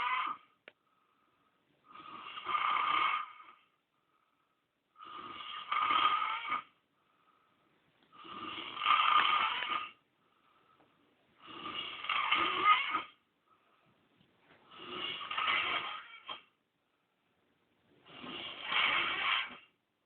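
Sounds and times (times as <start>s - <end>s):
quiet breaths: 0.0s - 19.9s
man snoring: 1.9s - 3.6s, 5.0s - 6.8s, 8.2s - 10.0s, 11.4s - 13.1s, 14.7s - 16.4s, 18.0s - 19.7s.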